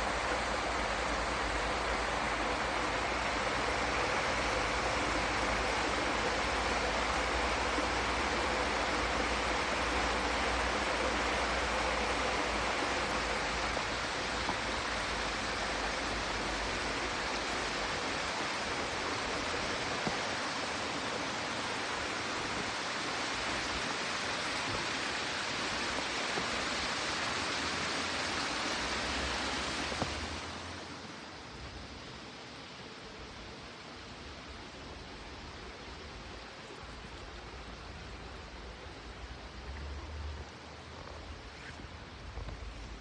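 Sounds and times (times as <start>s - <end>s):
flowing water rushing: 0.0s - 43.0s.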